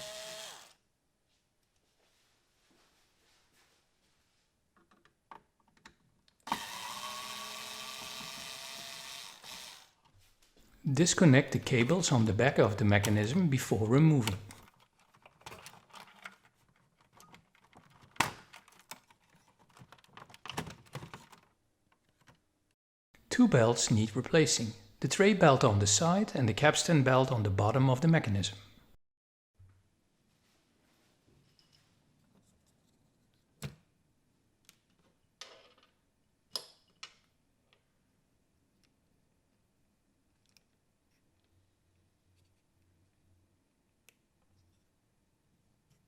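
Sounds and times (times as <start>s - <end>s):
small clicks of hands working: 34.6s - 35.2s, 38.7s - 39.6s, 40.3s - 43.0s, 43.7s - 45.0s.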